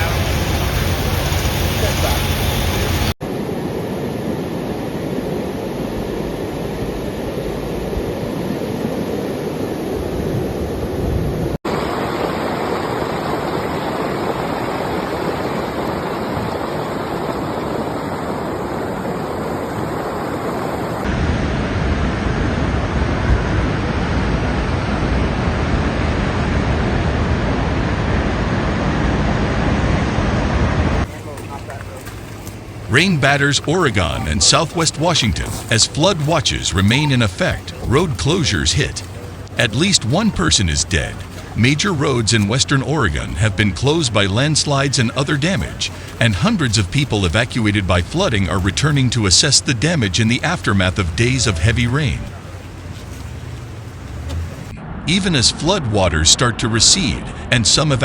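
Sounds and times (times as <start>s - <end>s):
floodwater rushing: 0.0s - 3.7s, 11.6s - 21.2s, 31.0s - 54.8s.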